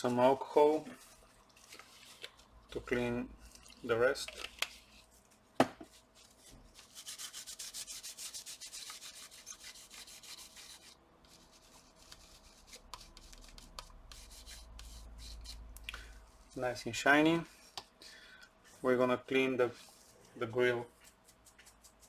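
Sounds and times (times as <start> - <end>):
brisk rubbing strokes: 5.9 - 18.0, 18.7 - 22.0.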